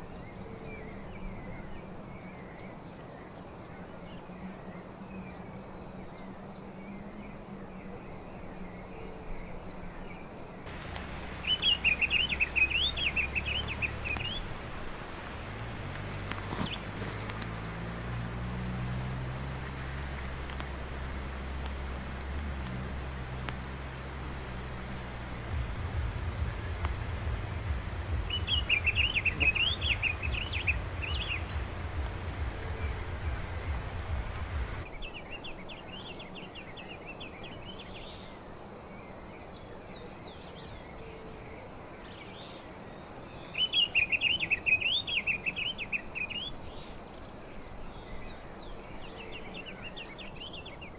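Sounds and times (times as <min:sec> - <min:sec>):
bird singing warbled phrases: 0:10.7 - 0:18.2, 0:26.6 - 0:38.3, 0:42.2 - 0:50.9
high insect buzz: 0:10.7 - 0:18.2
low rumble: 0:24.7 - 0:34.9.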